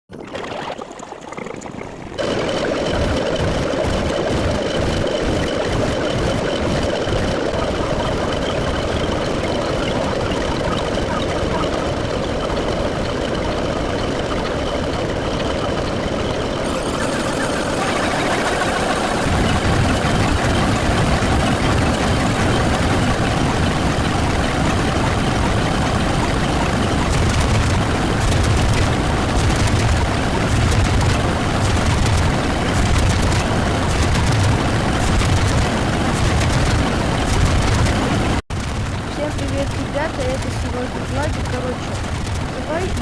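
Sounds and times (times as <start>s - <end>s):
overlapping sound effects: 2.2s - 12.6s, 16.6s - 23.6s, 39.1s - 43.0s.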